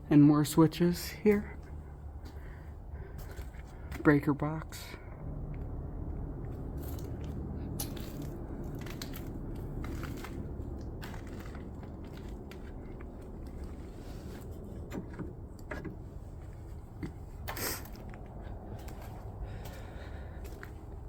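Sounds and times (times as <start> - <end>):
low steady rumble: 0.0 - 21.0.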